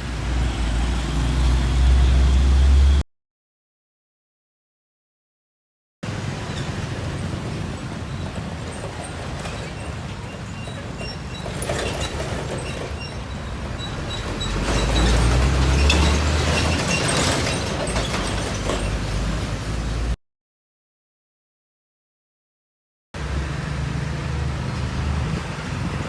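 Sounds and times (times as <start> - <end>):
train rumbling on rails: 0.0 - 3.0, 6.0 - 20.2, 23.2 - 26.0.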